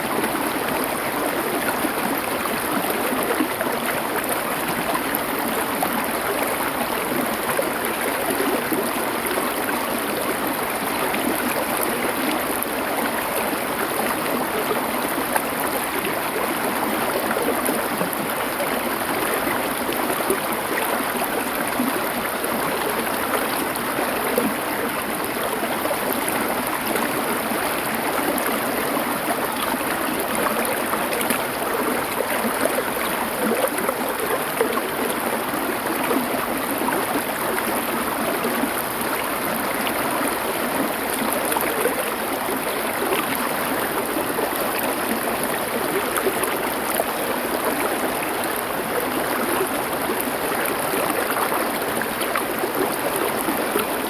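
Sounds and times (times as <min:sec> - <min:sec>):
stream flowing over stones: 0:00.0 - 0:54.0.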